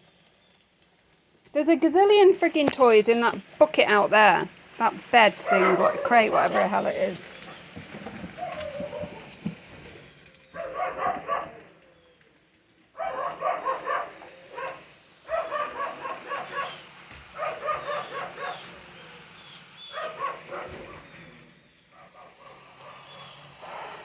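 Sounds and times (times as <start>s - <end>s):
dogs barking: 5.2s - 9.8s, 10.4s - 12.0s, 12.9s - 24.0s.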